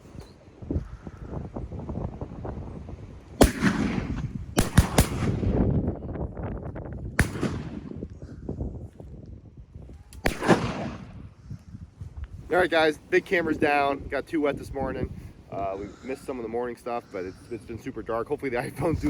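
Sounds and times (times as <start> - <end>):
shotgun shots echoing: 3.4 - 5.7, 7.2 - 8.0, 10.2 - 11.2.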